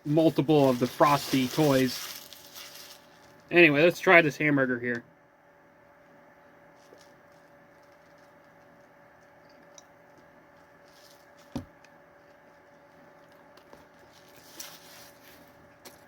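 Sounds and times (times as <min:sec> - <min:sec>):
steady room hum: 0:00.0 - 0:16.0
faint wrapper rustles and ticks: 0:00.1 - 0:03.5, 0:06.8 - 0:11.5, 0:12.2 - 0:16.0.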